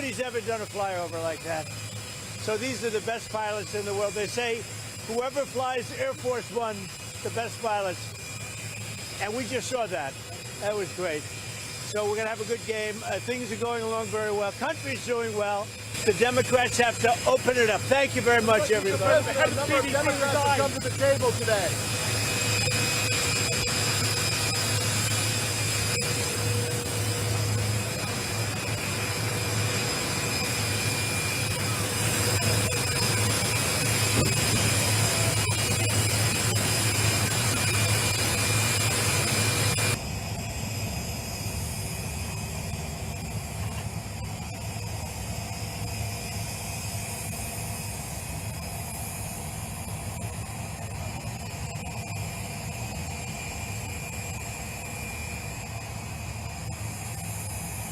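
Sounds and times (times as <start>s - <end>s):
jet aircraft engines running: 0.0s - 57.9s.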